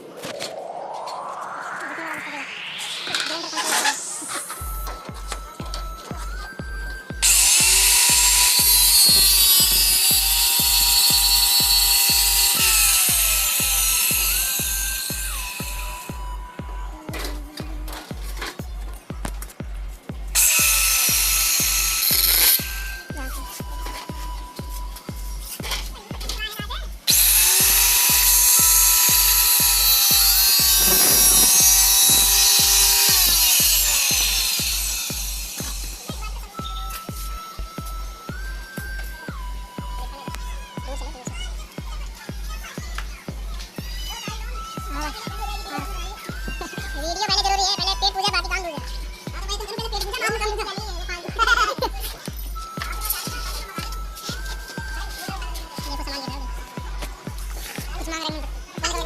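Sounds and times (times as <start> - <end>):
background music with steady beat: 0.0 - 59.0
power drill running: 7.2 - 16.3, 20.4 - 23.1, 27.1 - 36.1.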